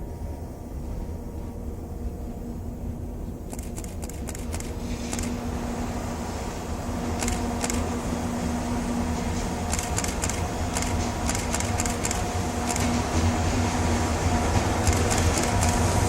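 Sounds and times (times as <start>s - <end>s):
steady hum and low rumble: 0.0s - 16.0s
train wheels clicking over rail joints: 3.5s - 5.4s, 7.1s - 8.0s, 8.8s - 16.0s.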